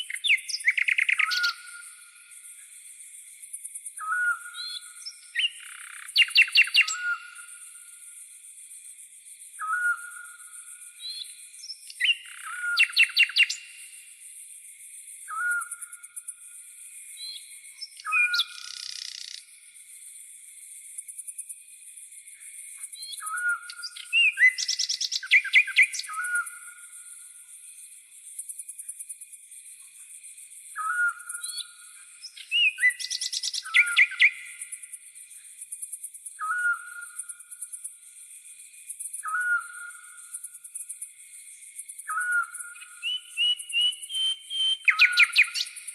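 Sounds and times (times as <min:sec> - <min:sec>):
quick bird song: 0:00.0 - 0:01.8, 0:04.0 - 0:07.2, 0:11.1 - 0:13.9, 0:22.9 - 0:26.7, 0:30.7 - 0:34.9, 0:42.0 - 0:45.9
high insect trill: 0:00.0 - 0:45.9.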